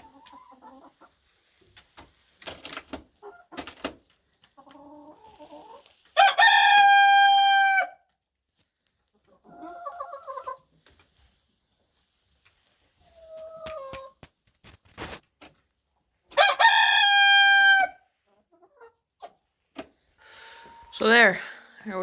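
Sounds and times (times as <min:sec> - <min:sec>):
chicken calls: 0:04.5 - 0:07.9, 0:16.3 - 0:19.4.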